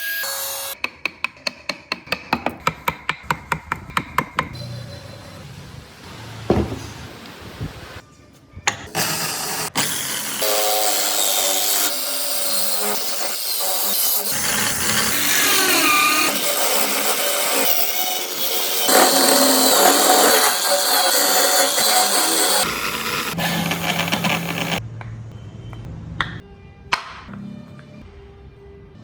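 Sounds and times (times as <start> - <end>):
knocks on wood: 6.5 - 7.1
power tool working wood: 9.0 - 24.8.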